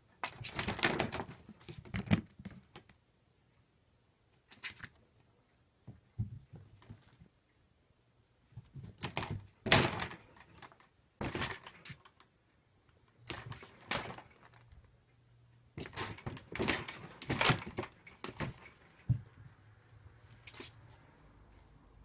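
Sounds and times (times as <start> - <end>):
plastic panels clattering and knocking: 0.3 - 2.9, 8.6 - 12.2, 13.2 - 14.6, 15.8 - 19.3.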